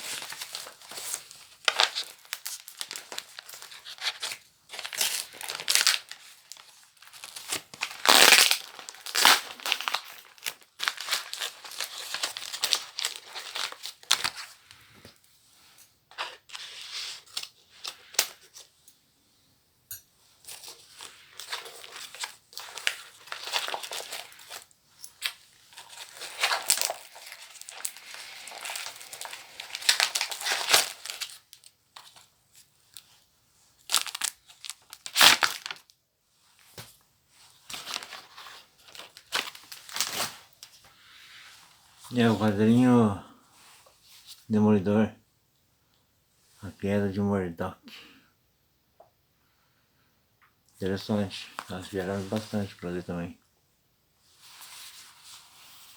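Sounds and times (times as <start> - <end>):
paper tearing and crumpling: 0.0 - 14.5, 21.0 - 24.6, 25.7 - 31.5, 33.9 - 35.9, 37.7 - 40.6.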